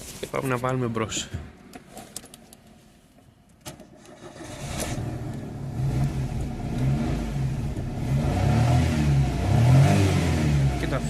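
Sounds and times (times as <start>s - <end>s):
car engine starting and revving: 3.9s - 11.0s.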